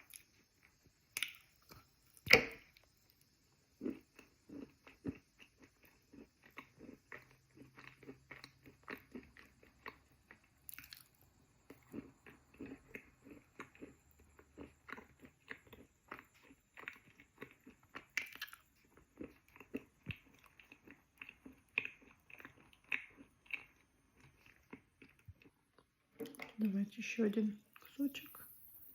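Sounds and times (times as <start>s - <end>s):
chewing soft crunches: 0.0s - 26.7s.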